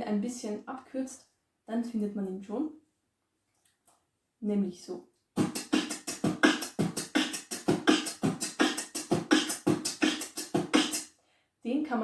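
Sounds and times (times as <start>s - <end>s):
beatboxing drum and bass beat: 5.4s - 11.1s.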